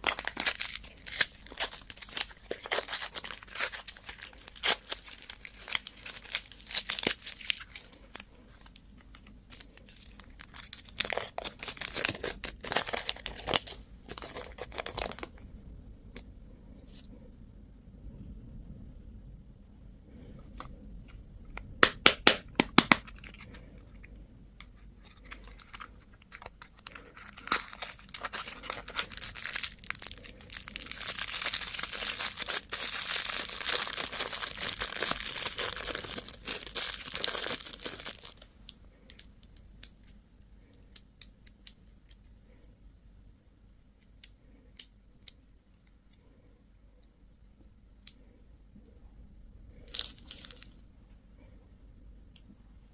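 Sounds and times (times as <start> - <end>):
candy wrapper crinkling and tearing: 0.0 - 15.4, 21.8 - 24.1, 24.9 - 40.2, 49.8 - 50.9.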